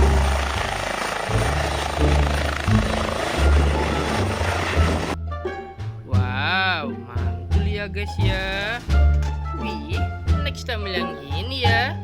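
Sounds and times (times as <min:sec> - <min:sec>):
helicopter rotor and engine: 0:00.0 - 0:05.2
background music with bass: 0:04.7 - 0:12.0.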